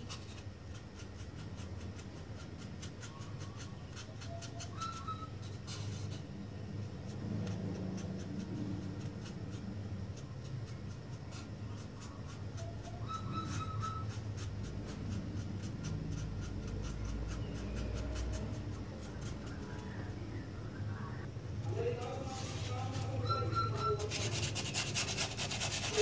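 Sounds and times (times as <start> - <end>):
bird chirp: 17.0 - 18.5.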